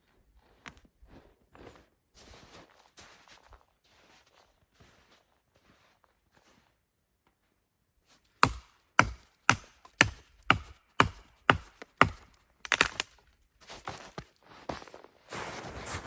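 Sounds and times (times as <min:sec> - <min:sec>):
sharp chopping blows: 0:08.4 - 0:13.1.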